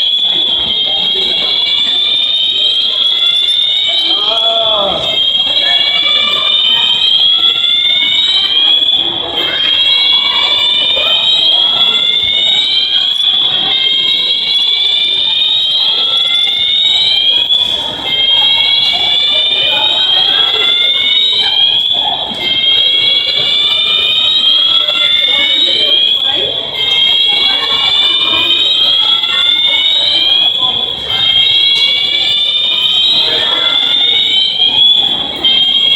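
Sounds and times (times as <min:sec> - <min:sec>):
fire alarm siren tone: 0:00.0 - 0:35.9.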